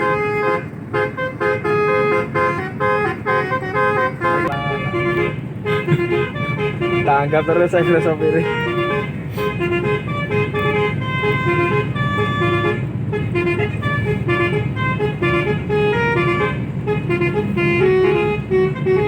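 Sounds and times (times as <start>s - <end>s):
bus engine running: 0.0s - 19.0s
bus multi-tone horn melody: 0.0s - 19.0s.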